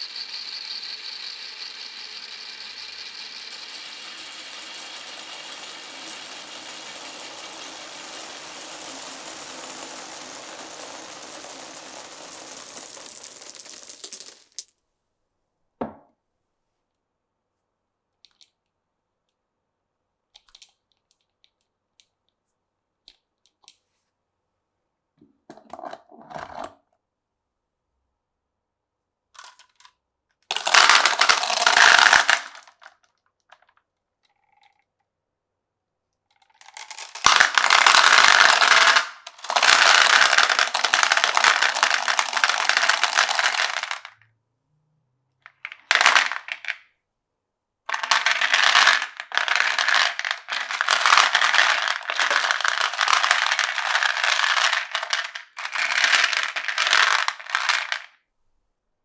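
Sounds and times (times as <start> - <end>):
marbles rolling on wooden run: 0.0 - 14.7, 30.5 - 32.8, 36.5 - 44.1, 45.7 - 46.8, 47.9 - 58.1.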